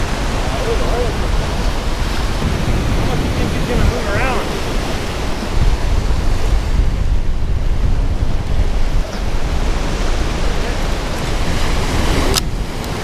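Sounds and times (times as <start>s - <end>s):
deep low rumble: 0.0s - 4.0s
surf washing: 0.0s - 13.0s
wind buffeting microphone: 0.0s - 13.0s.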